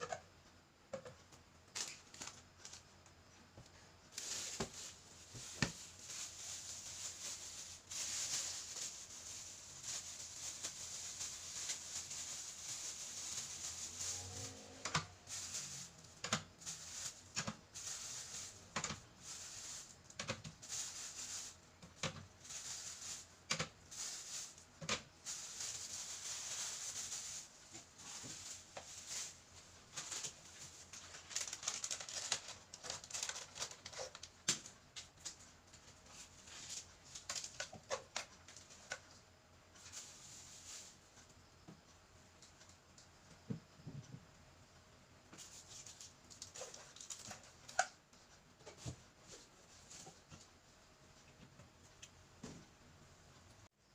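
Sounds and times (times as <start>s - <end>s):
steady hiss: 3.7s - 31.4s, 39.6s - 42.8s.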